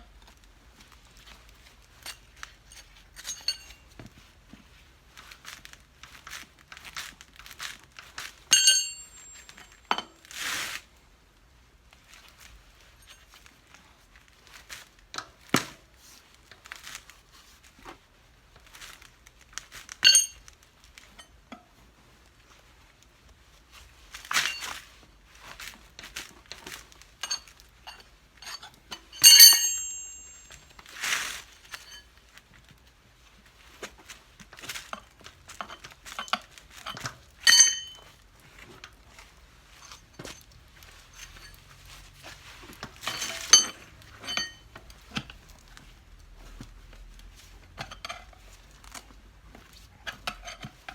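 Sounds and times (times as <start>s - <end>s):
metal tools clinking: 2.1s - 3.9s, 8.5s - 10.0s, 20.0s - 20.4s, 27.2s - 30.8s, 35.6s - 38.1s, 43.0s - 44.7s
ringing metallic clink: 3.3s - 3.8s, 8.5s - 9.7s, 20.0s - 20.4s, 29.2s - 30.7s, 37.5s - 38.0s
metallic clang: 8.5s - 9.6s, 29.1s - 30.6s
handling noise: 26.3s - 32.0s.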